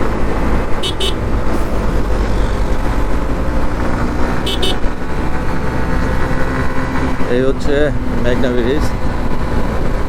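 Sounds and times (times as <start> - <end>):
engines droning: 0.0 - 10.0
heavy wind: 0.0 - 10.0
road rumble: 0.0 - 10.0
vehicle horn beeps: 0.8 - 1.2, 4.4 - 4.8.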